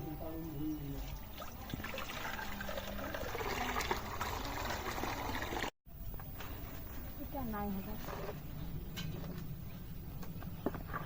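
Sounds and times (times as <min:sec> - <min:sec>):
water pouring and splashing: 0:01.2 - 0:05.7.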